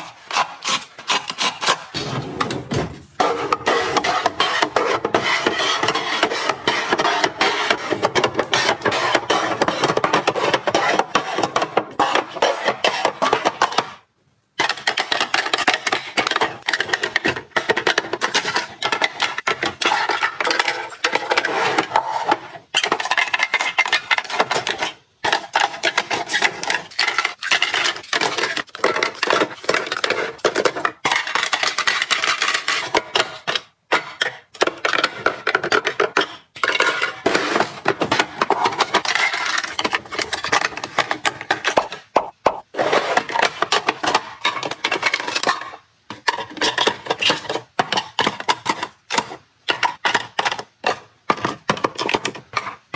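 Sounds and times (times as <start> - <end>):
household items clattering: 1.8 - 14.0, 14.6 - 52.9.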